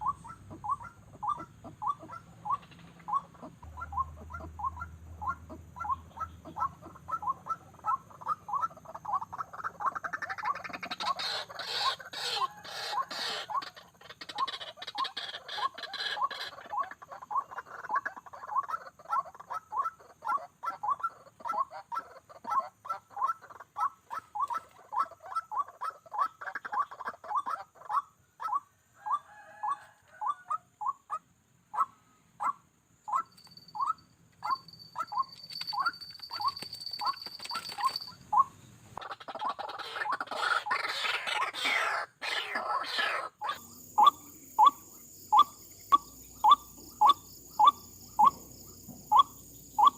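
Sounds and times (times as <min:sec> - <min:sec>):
waterhen calling: 0:00.0 - 0:31.1, 0:31.8 - 0:48.5, 0:49.1 - 0:49.9
high insect-like whine: 0:43.4 - 0:49.9.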